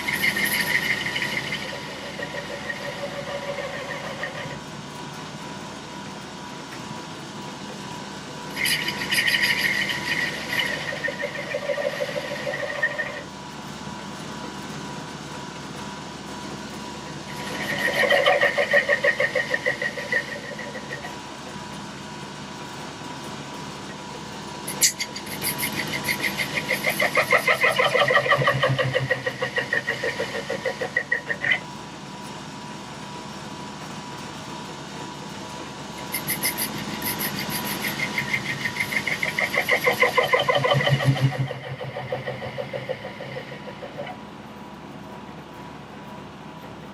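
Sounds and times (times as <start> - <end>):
lathe humming: 0.0 - 4.6, 35.9 - 44.1.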